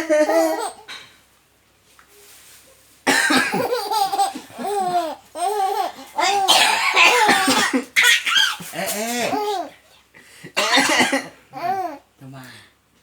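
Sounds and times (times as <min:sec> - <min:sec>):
baby laughing: 0:00.0 - 0:00.9, 0:03.4 - 0:09.8, 0:11.5 - 0:12.0
adult coughing: 0:03.1 - 0:03.6, 0:06.5 - 0:07.9, 0:10.5 - 0:11.4.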